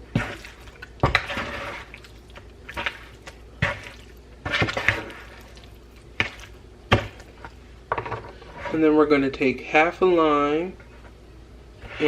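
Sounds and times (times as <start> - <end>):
wet squishing of chicken pieces: 0.0 - 7.6.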